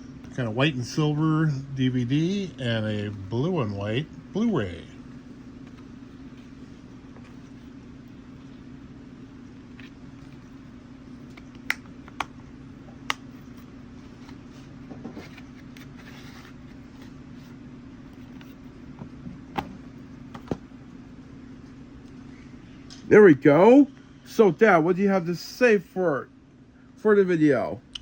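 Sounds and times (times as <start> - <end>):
steady low hum: 0.0 - 28.0
soft rustle: 13.5 - 18.7.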